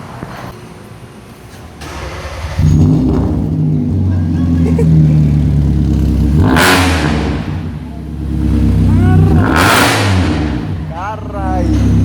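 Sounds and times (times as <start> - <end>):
car engine running loud: 1.8 - 12.0.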